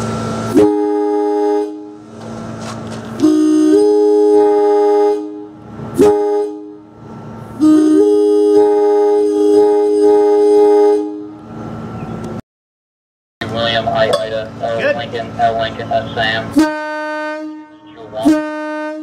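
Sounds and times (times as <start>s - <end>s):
locomotive air horn blasts: 0.4s - 2.1s, 3.1s - 11.5s, 16.4s - 19.0s.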